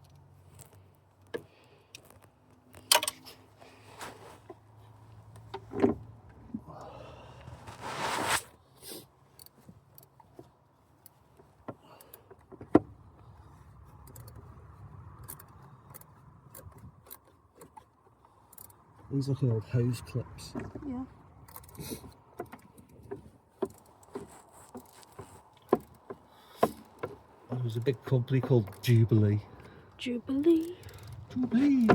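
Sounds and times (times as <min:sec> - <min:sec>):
clinks of hand tools and metal parts: 0:02.0 - 0:03.4
rustling: 0:02.0 - 0:05.2, 0:07.5 - 0:08.6.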